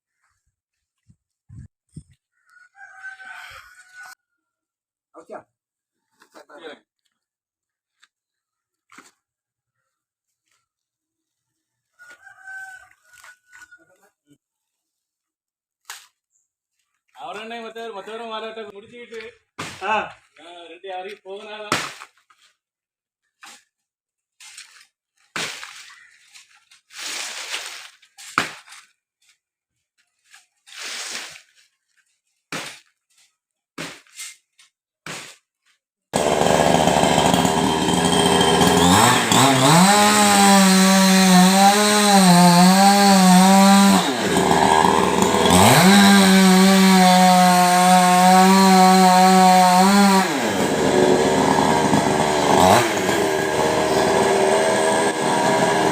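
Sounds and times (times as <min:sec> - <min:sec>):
chainsaw idling and revving: 0:36.1 - 0:55.9.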